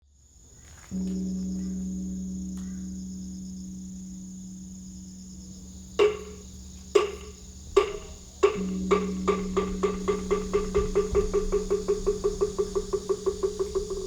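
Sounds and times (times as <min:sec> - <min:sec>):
large temple bell humming: 0:01.0 - 0:14.0
sharp knocks: 0:06.0 - 0:14.0.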